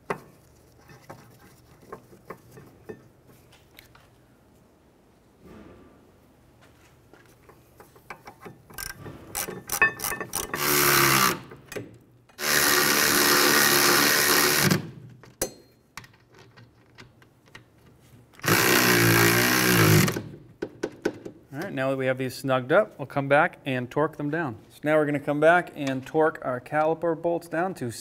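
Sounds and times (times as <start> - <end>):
metallic clicks of socket and bolts: 7.8 - 10.6
power tool driving bolts: 8.3 - 15.3, 18.4 - 20.4.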